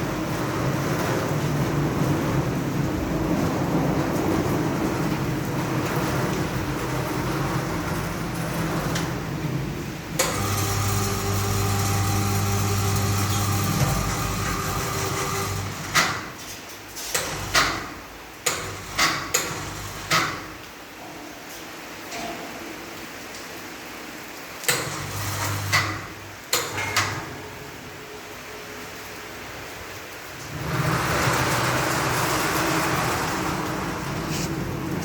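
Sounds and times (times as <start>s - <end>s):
steady machine hum: 0.0s - 16.3s, 27.2s - 35.0s.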